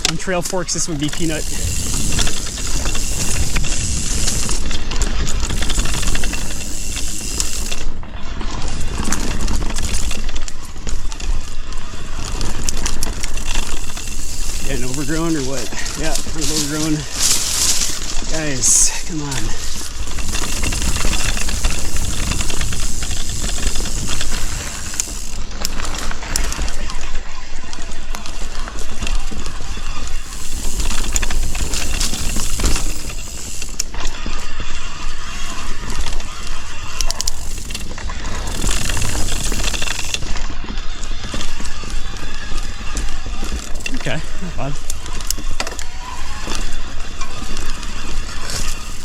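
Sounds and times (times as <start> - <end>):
bike parts rattling and clicking: 0.0 - 49.0
bike tyres rushing on trail: 0.0 - 49.0
wind rumble on microphone: 1.4 - 11.2, 15.9 - 25.6.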